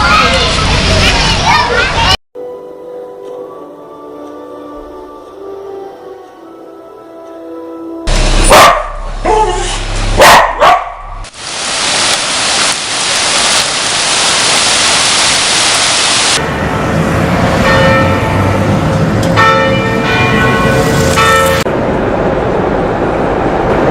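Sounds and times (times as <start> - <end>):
soft ambient music: 2.4 - 8.1
dog barking: 8.5 - 9.6, 10.2 - 11.2
loud steady rushing noise: 12.8 - 23.9.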